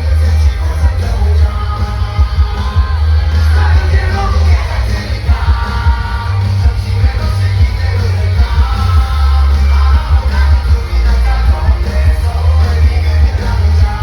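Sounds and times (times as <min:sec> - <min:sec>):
booming bass beat: 0:00.0 - 0:14.0
crowd yelling: 0:00.0 - 0:14.0
man singing: 0:00.0 - 0:14.0.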